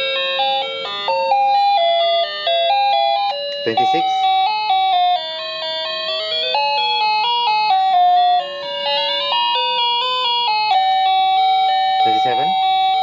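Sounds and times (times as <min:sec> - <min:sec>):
electronic doorbell chime tune: 0:00.0 - 0:13.0.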